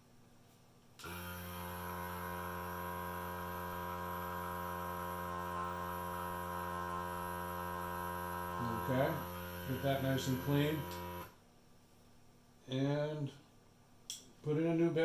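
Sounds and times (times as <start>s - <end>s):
small vacuum fan motor humming: 1.0s - 11.4s.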